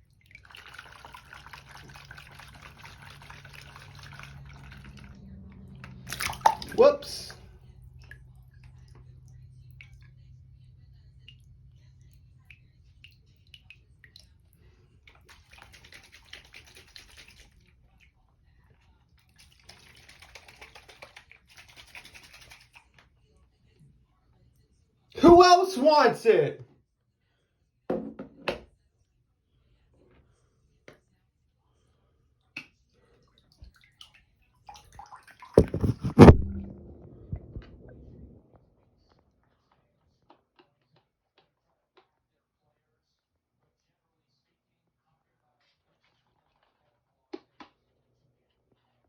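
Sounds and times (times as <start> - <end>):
water sloshing in a sink: 0.0 - 23.0, 33.2 - 38.4
water sloshing: 0.3 - 10.1, 34.7 - 38.3
low steady hum: 35.7 - 38.5.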